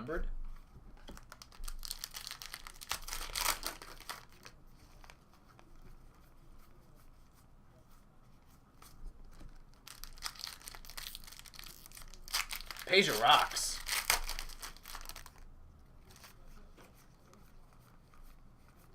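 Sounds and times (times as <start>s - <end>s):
card packaging crinkling and tearing: 1.1s - 5.2s, 9.2s - 15.4s.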